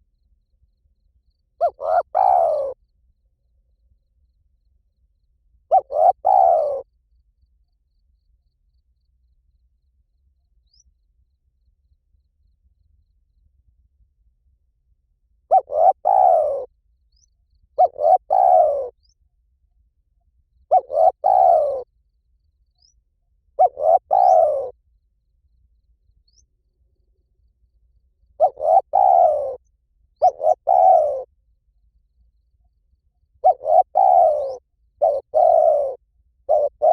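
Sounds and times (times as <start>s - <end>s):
dove cooing: 1.6s - 2.8s, 5.7s - 6.9s, 15.5s - 16.7s, 17.8s - 19.1s, 20.7s - 21.9s, 23.6s - 24.8s, 28.4s - 29.6s, 30.2s - 31.3s, 33.4s - 36.9s.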